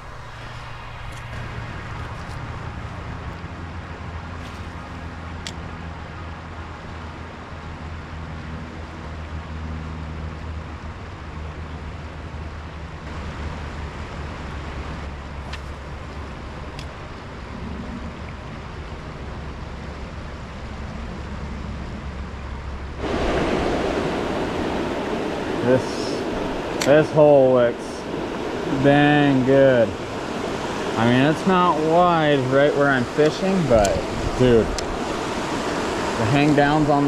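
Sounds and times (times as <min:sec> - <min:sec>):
low rumble: 0:00.0 - 0:05.2
river water rushing: 0:00.0 - 0:37.0.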